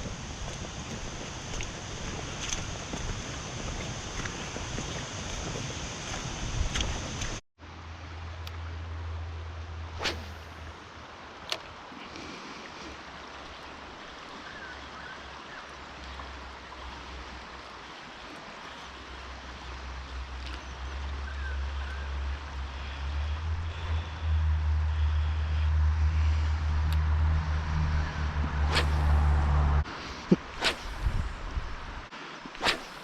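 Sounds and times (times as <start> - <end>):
creek rushing: 0.0 - 33.0
low rumble: 21.4 - 29.9, 30.5 - 32.1.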